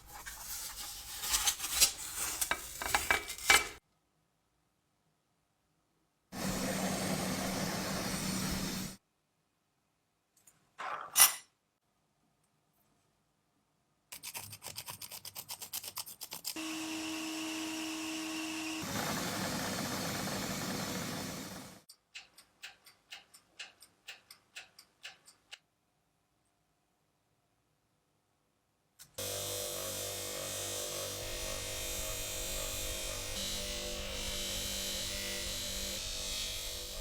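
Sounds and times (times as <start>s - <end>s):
hand filing scraping strokes: 0.0s - 3.8s, 14.2s - 16.8s.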